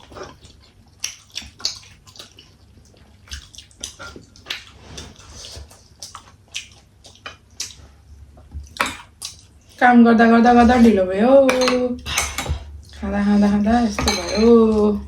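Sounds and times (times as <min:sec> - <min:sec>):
wet chewing sounds: 0:00.0 - 0:11.1.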